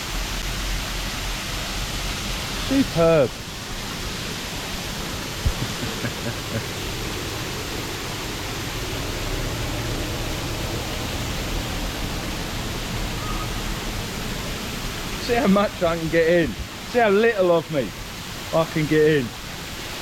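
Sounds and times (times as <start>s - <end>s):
waterfall rushing: 0.0s - 20.0s
soft low knocks: 5.4s - 6.1s.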